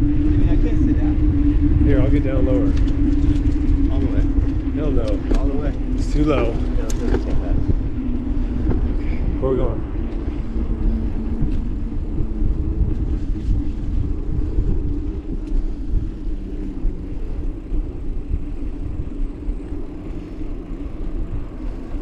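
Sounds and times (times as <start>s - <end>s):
bike tyres rolling: 0.0s - 22.0s
wind buffeting microphone: 0.0s - 22.0s.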